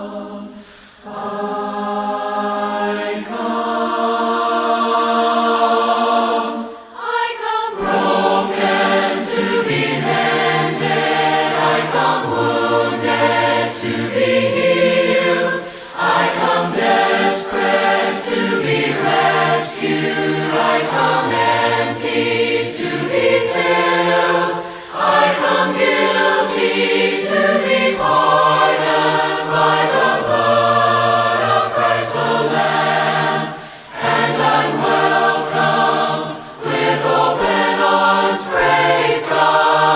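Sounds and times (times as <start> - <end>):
choir singing a hymn: 0.0 - 39.9
singers breathing: 0.5 - 1.1, 6.6 - 7.2, 15.5 - 16.2, 24.5 - 25.1, 33.4 - 34.1, 36.3 - 36.6.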